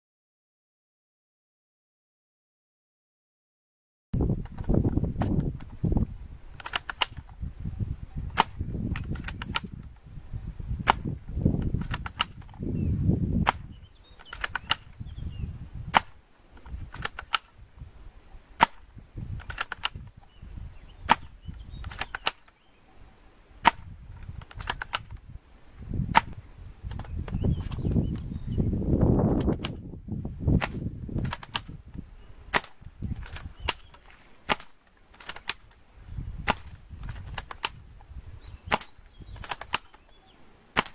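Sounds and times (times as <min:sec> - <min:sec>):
airsoft guns firing: 0:32.5 - 0:35.7.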